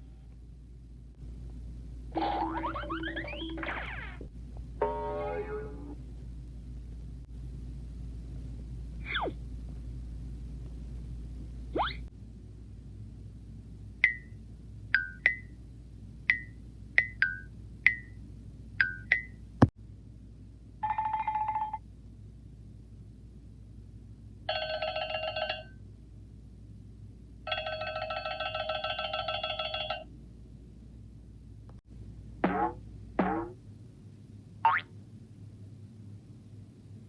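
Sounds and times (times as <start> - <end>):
old telephone bell ringing: 20.8 - 21.8, 24.5 - 25.8, 27.5 - 30.1.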